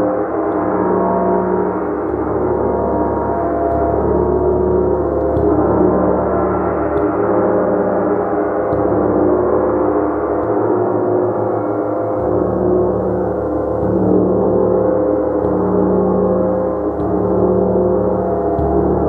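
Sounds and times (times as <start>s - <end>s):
gong ringing: 0.0s - 19.0s.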